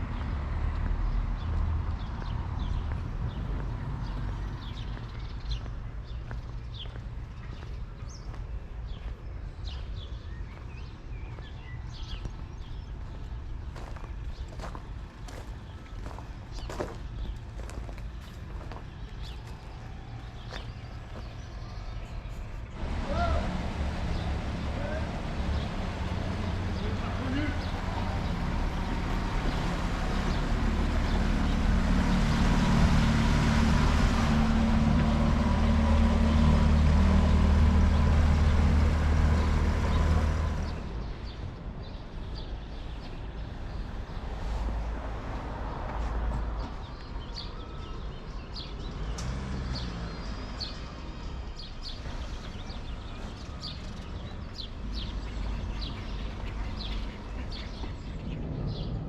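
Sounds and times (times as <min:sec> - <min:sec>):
vehicle engine rumble: 0:00.0 - 0:59.0
birds chirping: 0:01.0 - 0:44.9, 0:46.2 - 0:59.0.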